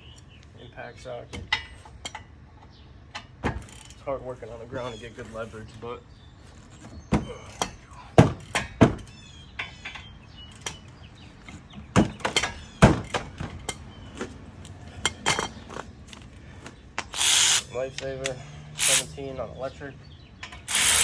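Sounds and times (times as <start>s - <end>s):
tools knocking and clunking on metal: 1.3s - 4.0s, 6.5s - 17.2s.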